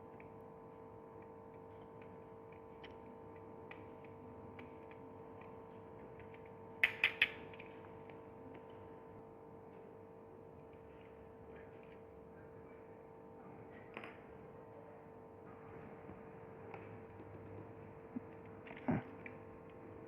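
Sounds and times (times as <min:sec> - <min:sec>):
small screwdriver ticking and tapping: 0:06.2 - 0:07.7.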